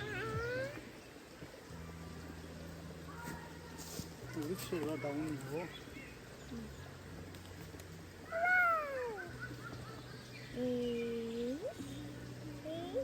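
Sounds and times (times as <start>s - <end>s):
animal calling: 8.3s - 10.1s.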